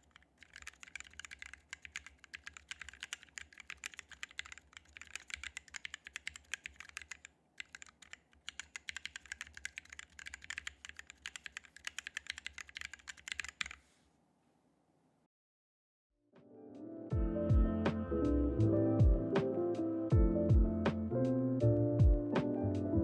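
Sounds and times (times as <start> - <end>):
mechanical keyboard typing: 0.0 - 13.8.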